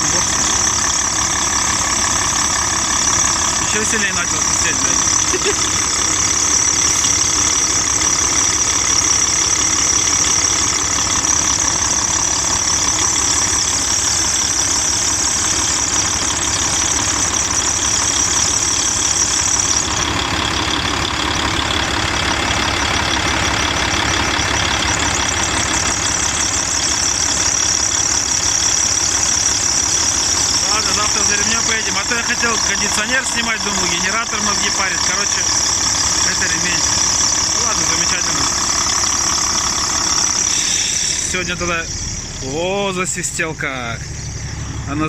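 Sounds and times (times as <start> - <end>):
diesel engine idling: 0.0 - 45.0
high-pitched belt whistle: 40.2 - 42.7.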